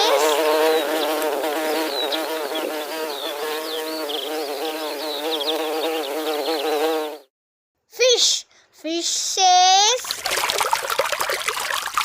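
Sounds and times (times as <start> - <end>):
honeybee buzzing: 0.0 - 7.3.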